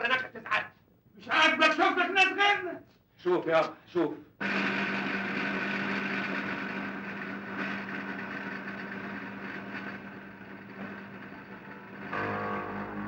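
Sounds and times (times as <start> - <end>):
steady machine hum: 4.4 - 13.0
music: 8.3 - 13.0.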